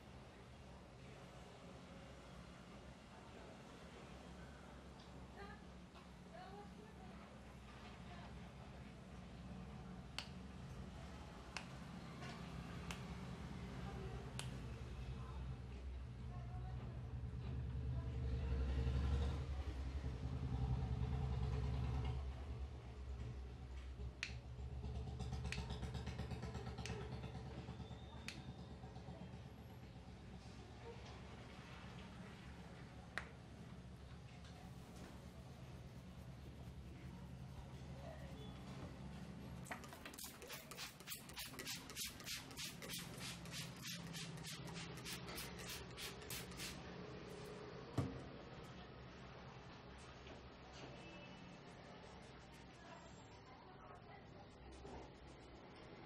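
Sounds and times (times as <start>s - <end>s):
low steady hum: 22.4s - 50.7s.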